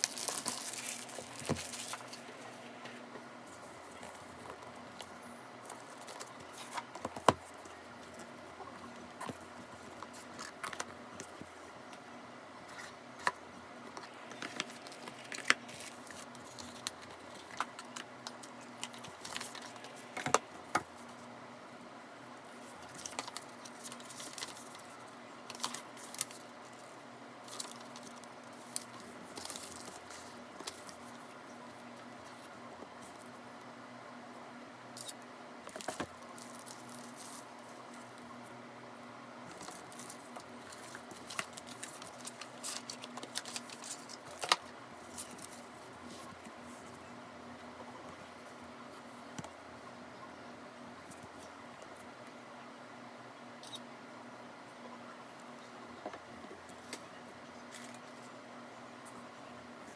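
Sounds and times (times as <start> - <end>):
paper or plastic rustling: 0.0 - 8.4, 13.9 - 21.2, 22.5 - 31.4, 39.5 - 46.9
faint steady hum: 0.0 - 59.9.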